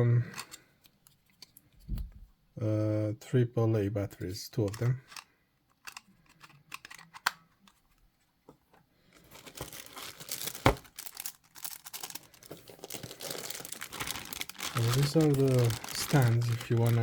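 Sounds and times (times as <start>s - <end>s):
packaging crinkling: 9.0s - 17.0s.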